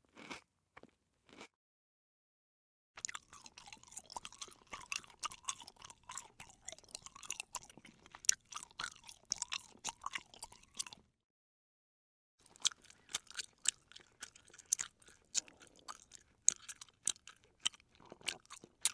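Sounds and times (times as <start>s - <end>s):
person chewing crunchy food: 0.0s - 1.5s, 3.0s - 11.1s, 12.4s - 18.9s.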